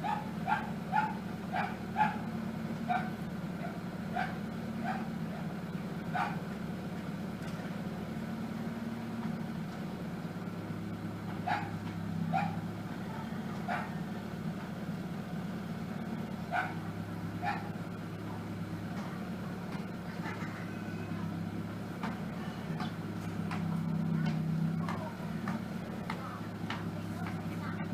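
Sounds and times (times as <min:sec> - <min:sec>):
dog barking: 0:00.0 - 0:06.5, 0:11.4 - 0:12.6, 0:13.2 - 0:14.0, 0:16.5 - 0:17.8
car engine idling: 0:00.0 - 0:27.9.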